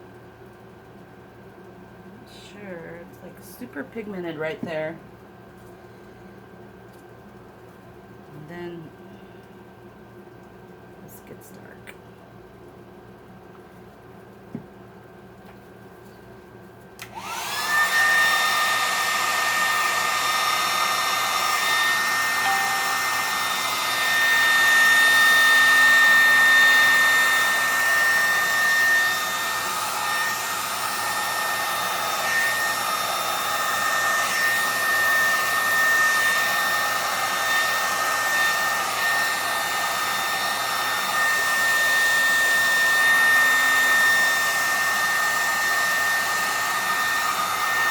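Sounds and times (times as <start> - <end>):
hair dryer whine: 17.0 - 47.9.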